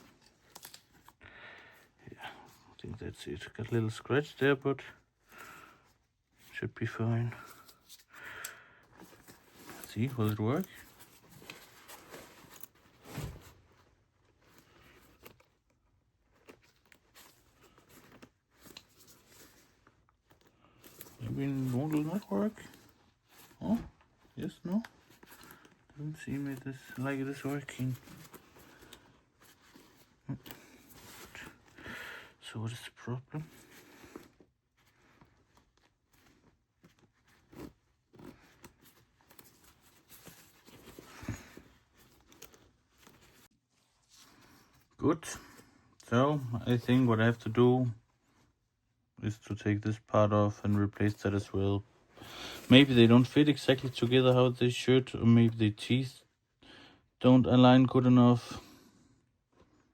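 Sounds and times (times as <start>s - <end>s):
fabric rustling: 5.0s - 32.4s, 33.3s - 48.8s.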